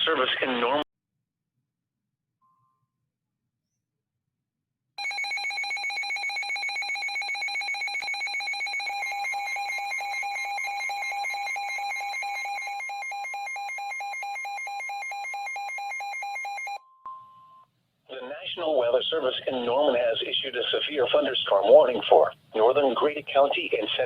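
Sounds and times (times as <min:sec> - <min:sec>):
weather radio alarm trilling: 0:05.0 - 0:16.8.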